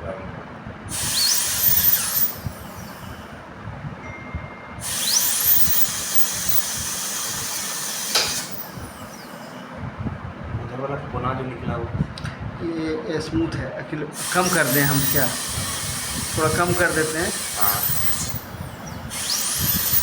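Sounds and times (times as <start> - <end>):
dental drill whining: 0.9 - 9.8, 14.2 - 20.0.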